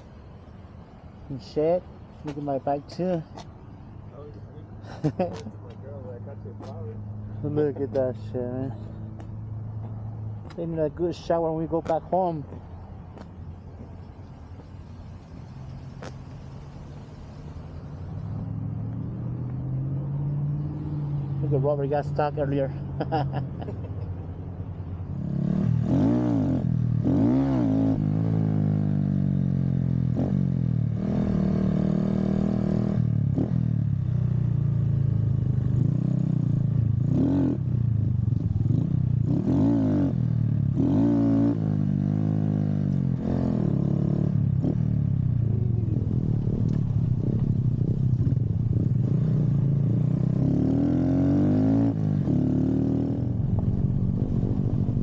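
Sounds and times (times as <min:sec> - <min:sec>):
motorbike engine revving: 0:25.2 - 0:33.7, 0:35.2 - 0:55.0.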